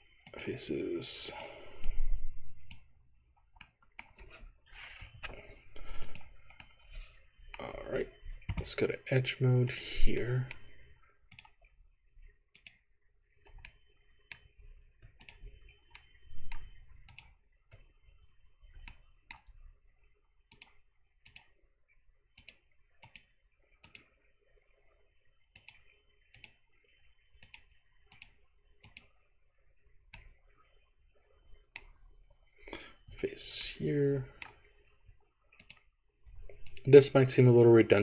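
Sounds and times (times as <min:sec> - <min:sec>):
mouse and keyboard clicks: 0:06.0 - 0:06.7, 0:11.3 - 0:11.6, 0:12.5 - 0:12.8, 0:13.5 - 0:17.8, 0:20.5 - 0:21.5, 0:22.4 - 0:24.1, 0:25.6 - 0:26.6, 0:27.4 - 0:29.1, 0:35.6 - 0:35.9, 0:36.6 - 0:36.9.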